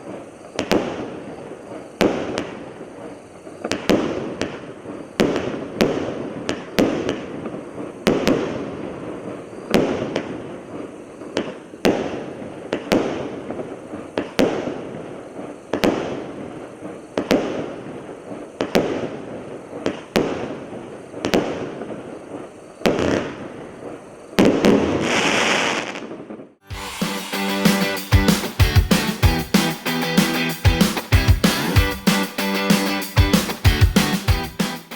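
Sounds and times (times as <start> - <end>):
firework barrage shots: 0.0 - 26.6.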